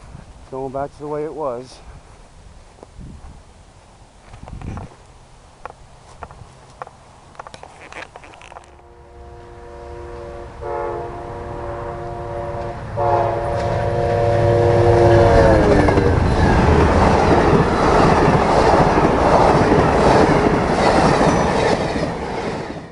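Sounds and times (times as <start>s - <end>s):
train rolling past: 8.2s - 22.9s
train air horn: 8.7s - 16.2s.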